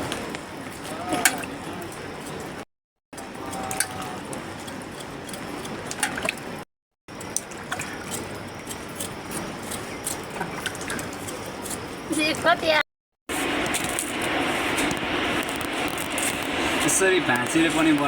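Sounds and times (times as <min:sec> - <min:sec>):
water rushing: 0:13.4 - 0:18.0.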